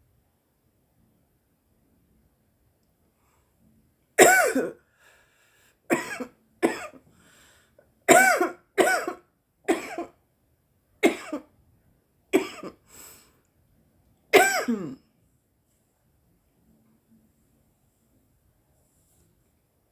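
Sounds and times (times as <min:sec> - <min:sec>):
woman coughing harshly: 0:04.2 - 0:04.8, 0:05.9 - 0:07.0, 0:08.1 - 0:10.1, 0:11.0 - 0:11.5, 0:12.4 - 0:12.8, 0:14.4 - 0:15.0
faint breaths: 0:04.8 - 0:05.9, 0:07.0 - 0:07.9, 0:12.8 - 0:13.5.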